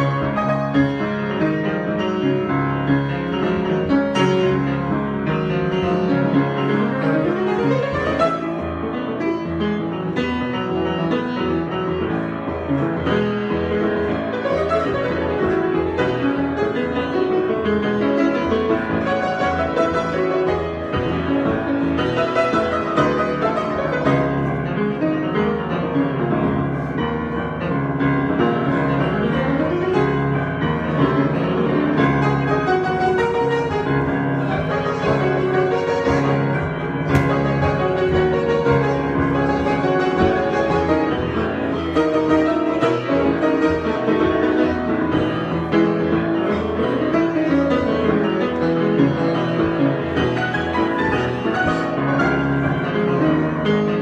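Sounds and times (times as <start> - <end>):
piano improvisation: 0.0 - 54.0.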